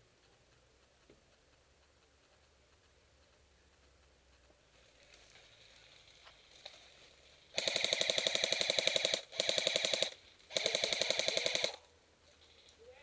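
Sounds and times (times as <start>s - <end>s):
airsoft gun firing full auto: 7.5s - 11.9s.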